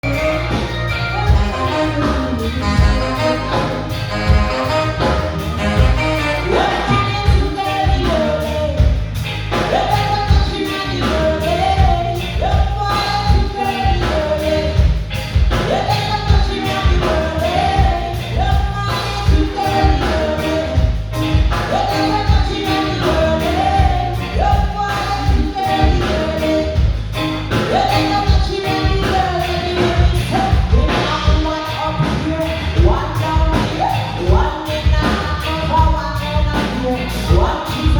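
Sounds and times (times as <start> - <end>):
lead singing: 0.0 - 8.8
live band playing: 0.0 - 37.9.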